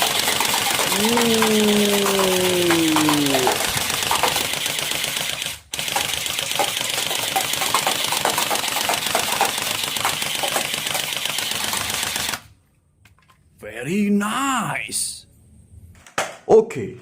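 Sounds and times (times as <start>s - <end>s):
toy gun rattling clicks: 0.0s - 12.5s.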